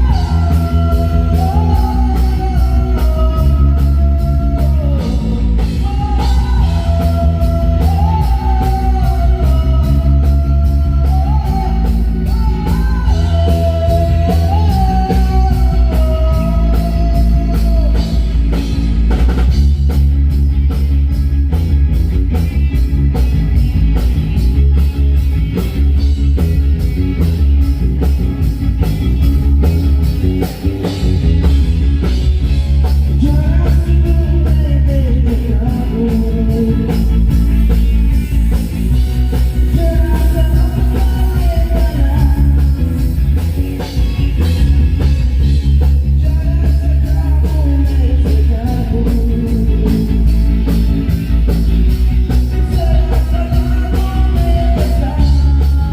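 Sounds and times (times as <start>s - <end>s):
rock band playing: 0.0s - 55.9s.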